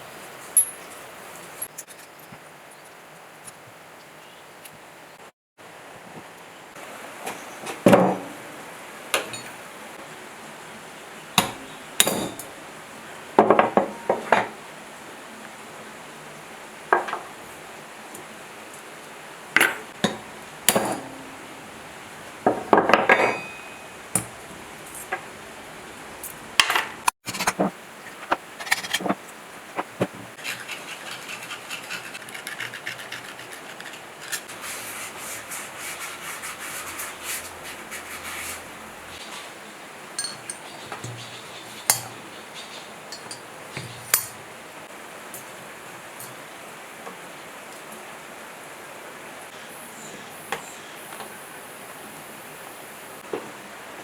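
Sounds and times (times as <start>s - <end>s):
fast continuous scraping: 27.2s - 39.6s.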